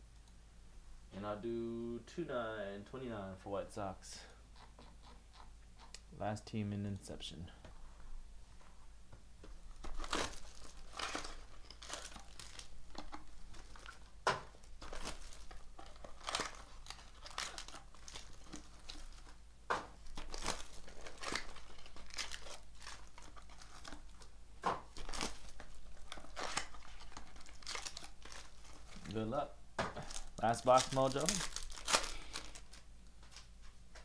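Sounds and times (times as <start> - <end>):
plastic wrapping crinkling: 9.6 - 29.4, 30.0 - 33.7.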